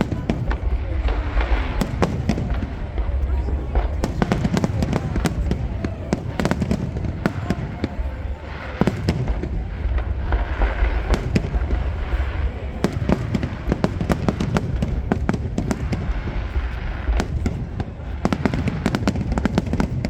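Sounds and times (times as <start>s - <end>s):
booming firework shells: 0.0s - 20.0s
fireworks crackling and popping: 0.0s - 20.0s.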